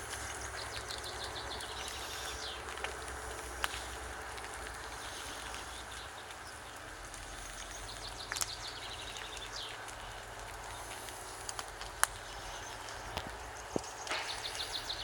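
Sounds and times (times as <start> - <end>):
steady hiss: 0.0 - 9.0, 9.8 - 15.0
songbird trill: 0.1 - 2.7, 4.9 - 10.8, 12.1 - 15.0
sharp snaps: 8.0 - 15.0.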